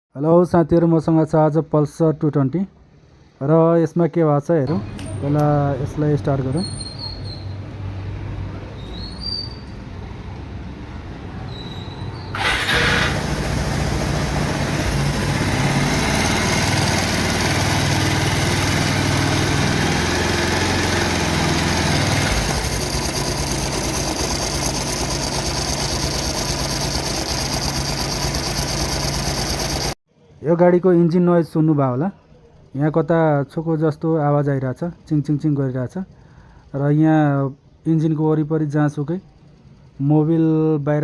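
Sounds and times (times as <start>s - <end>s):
motorcycle engine starting and idling: 12.3s - 30.0s
metallic timing chain chatter: 22.6s - 30.0s.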